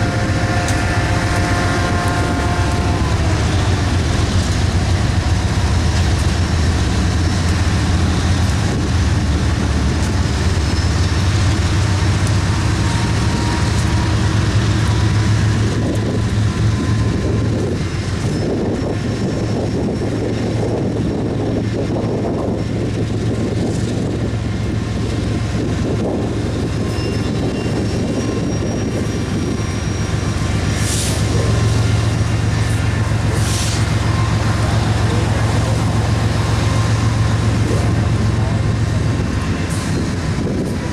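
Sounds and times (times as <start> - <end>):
diesel locomotive drone: 0.0 - 40.9
rail cars rolling: 0.0 - 40.9
high-pitched squeals: 26.6 - 40.2.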